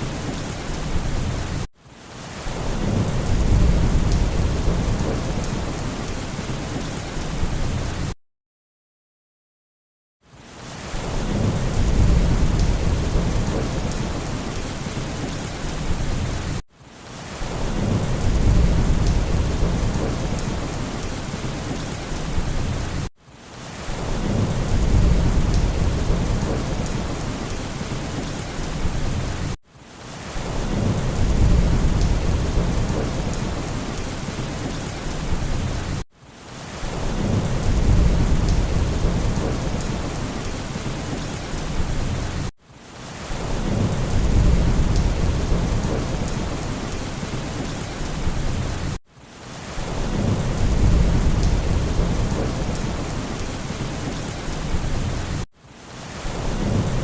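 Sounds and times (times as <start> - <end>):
heavy rain hissing: 0.0 - 8.2, 10.4 - 57.0
low thunder rumble: 2.6 - 8.0, 11.0 - 16.6, 17.5 - 23.0, 24.0 - 29.6, 30.5 - 34.4, 36.9 - 40.4, 43.4 - 47.0, 50.0 - 55.4.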